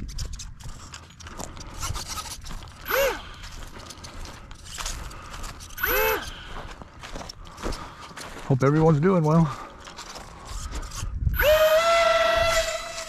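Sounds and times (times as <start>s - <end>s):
handling and rustling noises: 0.0s - 11.2s
model plane motor whine: 1.8s - 3.2s, 5.7s - 6.5s, 10.8s - 13.0s.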